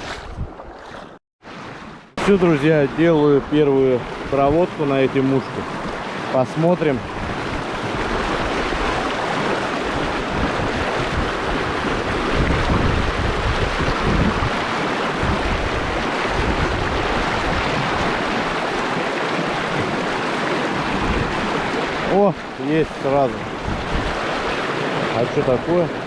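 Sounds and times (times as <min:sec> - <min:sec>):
wind buffeting microphone: 0:00.0 - 0:01.0, 0:06.9 - 0:22.3, 0:23.0 - 0:25.1
river rushing over stones: 0:02.2 - 0:26.0.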